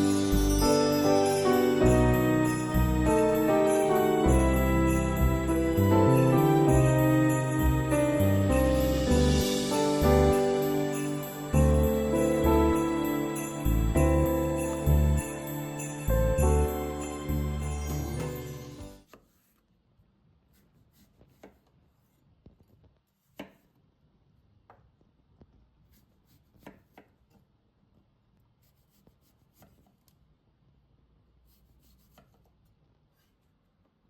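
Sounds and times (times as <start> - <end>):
background music: 0.0 - 19.0.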